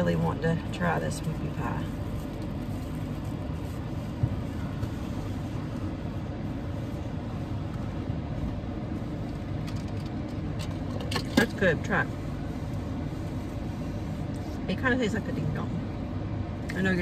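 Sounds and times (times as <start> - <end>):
car engine rumble from inside: 0.0 - 17.0.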